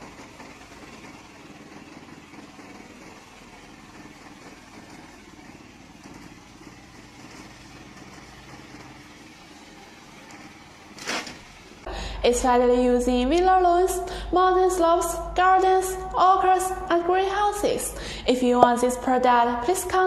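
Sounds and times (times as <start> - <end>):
mower engine running steadily: 0.0 - 12.2.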